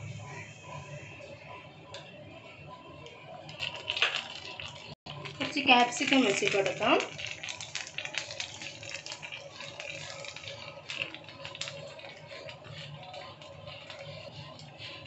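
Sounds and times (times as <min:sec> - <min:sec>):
ghee sizzling in a hot pan: 0:03.5 - 0:15.0.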